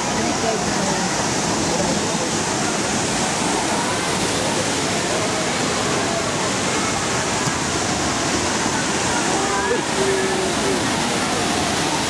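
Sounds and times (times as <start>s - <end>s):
faint voices: 0.0s - 12.0s
waterfall rushing: 0.0s - 12.0s.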